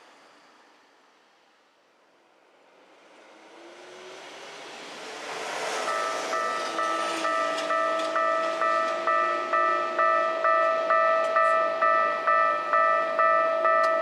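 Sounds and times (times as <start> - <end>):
rushing noise: 0.0 - 10.1
level crossing warning bell: 5.8 - 14.0.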